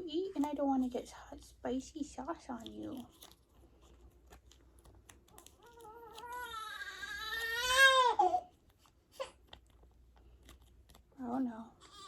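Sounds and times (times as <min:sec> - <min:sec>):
baby crying: 0:05.7 - 0:08.5.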